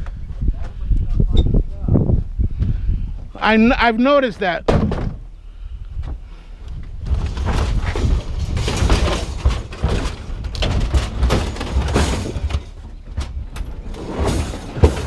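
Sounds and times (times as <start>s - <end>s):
scrap metal clattering and thudding: 4.6s - 5.3s, 7.0s - 15.0s.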